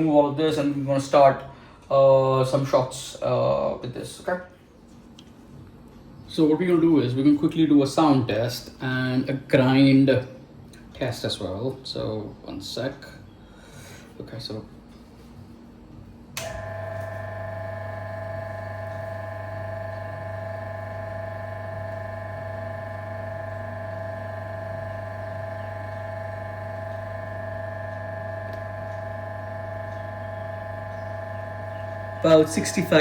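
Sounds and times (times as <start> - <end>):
grinder motor humming and whining: 16.4 - 33.0.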